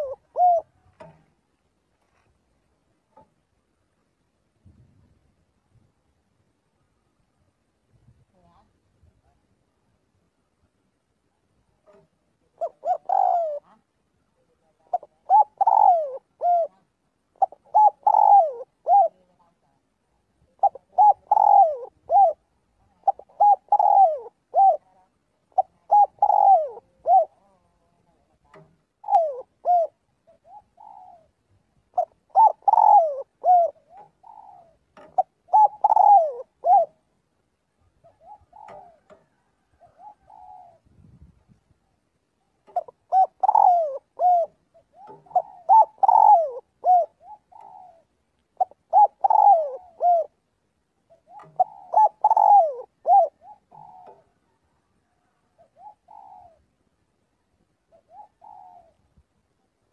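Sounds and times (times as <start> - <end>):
dove cooing: 0.0 - 1.4, 11.8 - 19.7, 20.4 - 37.1, 37.8 - 40.9, 41.8 - 56.8, 57.8 - 59.1.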